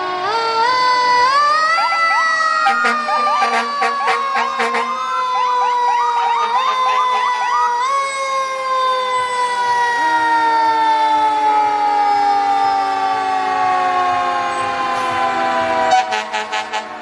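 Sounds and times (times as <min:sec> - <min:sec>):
fire truck siren falling tone: 0:00.0 - 0:17.0
lower siren tone: 0:00.0 - 0:17.0
quick rising siren chirps: 0:01.3 - 0:13.6.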